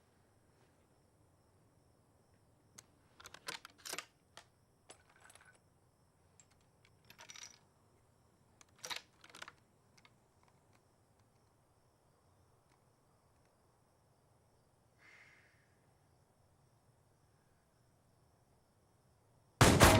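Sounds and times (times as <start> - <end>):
metal parts clicking and clinking: 3.2 - 4.1, 4.9 - 5.6, 6.4 - 7.7, 8.6 - 10.6.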